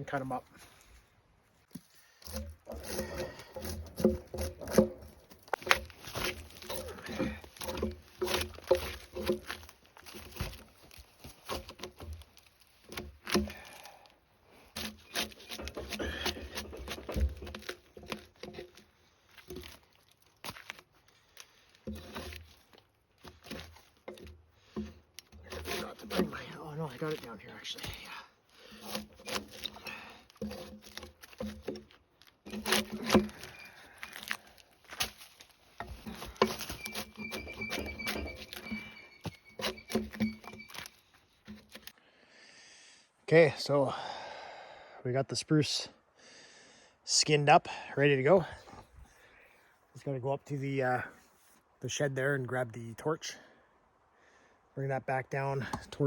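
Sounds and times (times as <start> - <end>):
bark being scraped off log: 2.1 - 13.8, 14.7 - 20.9, 21.6 - 41.9.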